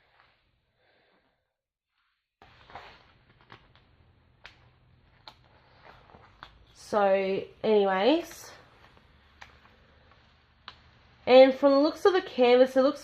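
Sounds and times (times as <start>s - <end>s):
soft rustling of canvas: 1.9s - 3.9s.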